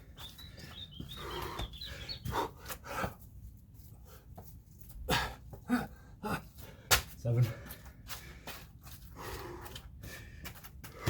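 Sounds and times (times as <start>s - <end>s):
man panting: 1.1s - 3.3s, 5.0s - 11.0s.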